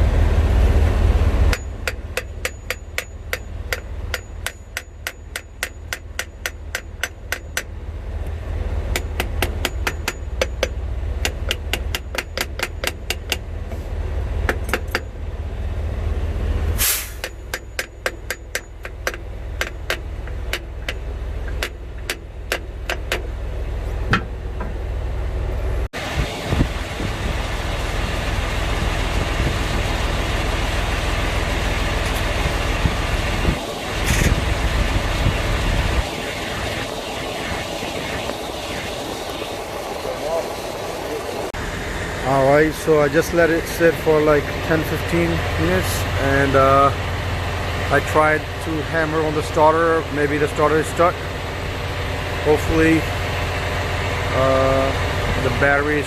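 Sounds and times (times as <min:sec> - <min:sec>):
engine rumble: 0:00.0 - 0:56.0
hammer tapping metal: 0:01.5 - 0:07.8, 0:08.9 - 0:13.5, 0:14.4 - 0:15.1, 0:17.1 - 0:23.3
loud hiss: 0:16.8 - 0:17.4.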